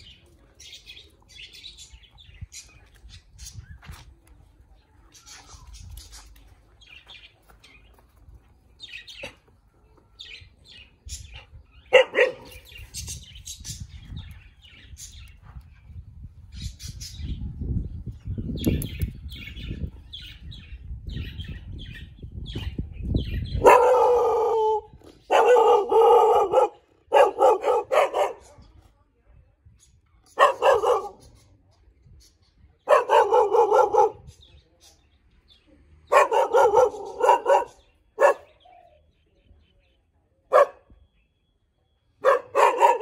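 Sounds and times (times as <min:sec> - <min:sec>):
small birds chirping: 0:00.0 - 0:43.0
dog barking: 0:11.9 - 0:12.6, 0:23.6 - 0:28.6, 0:30.4 - 0:31.3, 0:32.8 - 0:34.3, 0:36.1 - 0:38.6, 0:40.5 - 0:40.9, 0:42.2 - 0:43.0.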